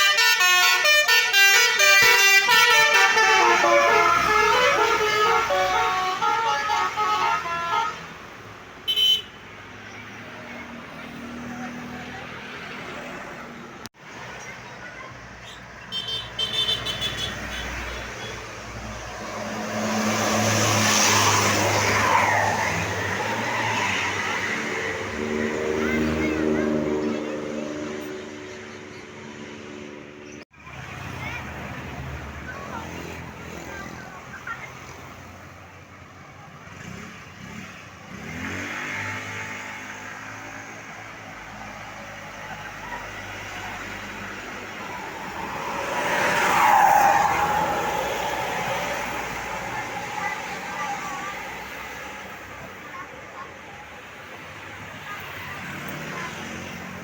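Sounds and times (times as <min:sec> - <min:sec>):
bus driving past: 0:17.1 - 0:57.0.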